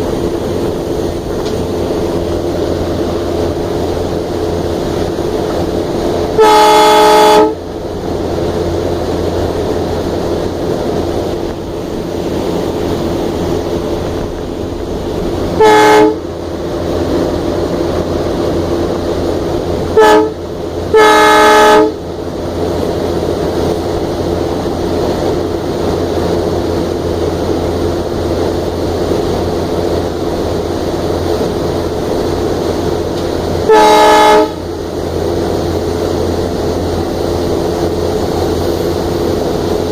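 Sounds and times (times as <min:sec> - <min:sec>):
diesel locomotive running: 0:00.0 - 0:39.9
locomotive horn blasts: 0:06.3 - 0:07.6, 0:15.5 - 0:16.3, 0:19.9 - 0:22.0, 0:33.6 - 0:34.7.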